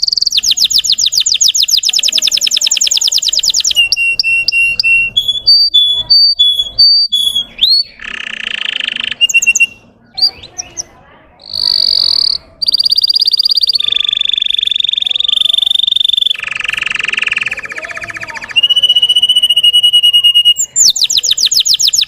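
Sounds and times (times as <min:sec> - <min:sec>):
canary singing: 0:00.0 - 0:22.0.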